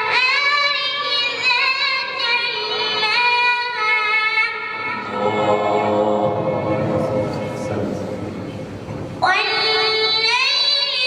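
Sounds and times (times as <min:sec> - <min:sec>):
lower voice singing: 0:04.9 - 0:07.8.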